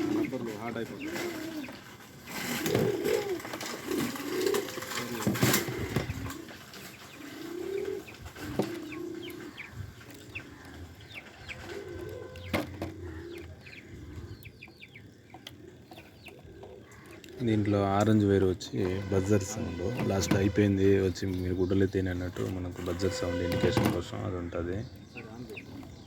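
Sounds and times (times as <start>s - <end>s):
pigeons cooing: 0.0s - 17.8s.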